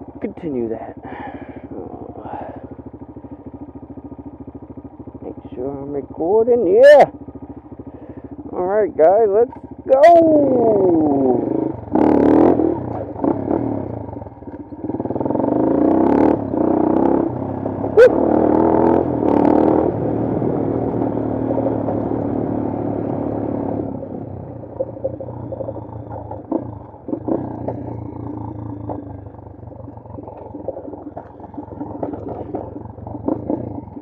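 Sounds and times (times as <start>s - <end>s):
motorcycle engine revving: 0.0s - 34.0s.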